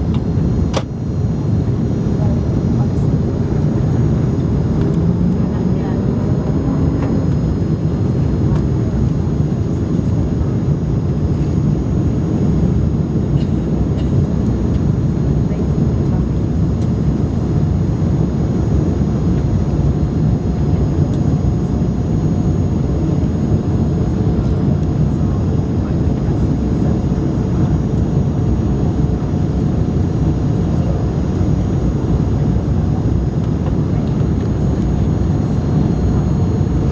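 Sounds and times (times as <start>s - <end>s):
airliner cabin engine drone: 0.0s - 36.9s
faint steady whine: 0.0s - 36.9s.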